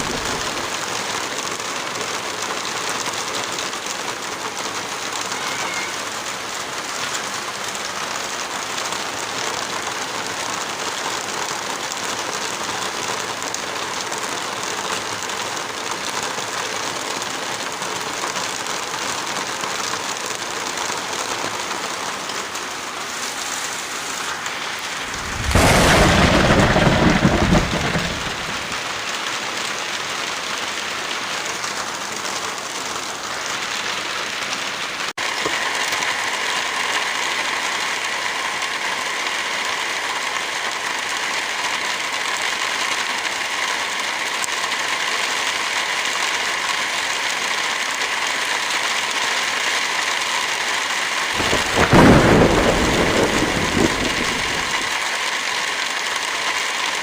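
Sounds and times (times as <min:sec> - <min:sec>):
heavy rain falling: 0:00.0 - 0:57.0
deep rushing sound: 0:25.0 - 0:28.7.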